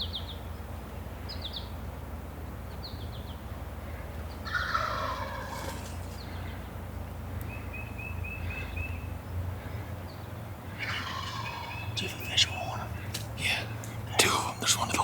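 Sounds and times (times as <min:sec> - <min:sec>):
small birds chirping: 0:02.7 - 0:15.0
turkey gobbling: 0:04.4 - 0:06.0, 0:10.8 - 0:12.0.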